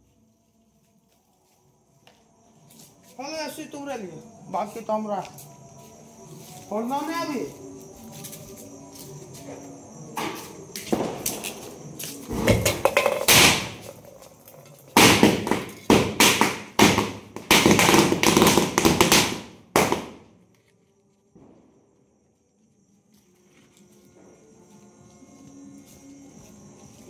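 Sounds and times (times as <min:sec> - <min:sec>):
firecrackers banging: 0:10.2 - 0:20.3.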